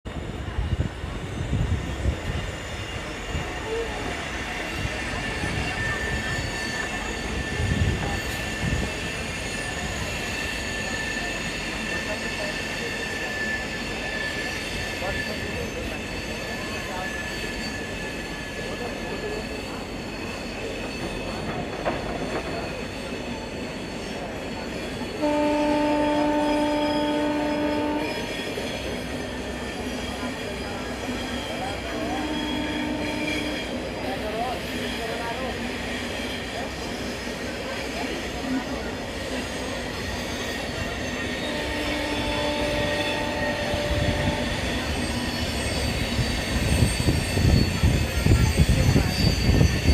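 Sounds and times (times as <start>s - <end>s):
train wheels rumbling on rails: 0.1s - 49.9s
train horn: 25.2s - 29.2s, 31.7s - 34.0s, 40.6s - 45.4s.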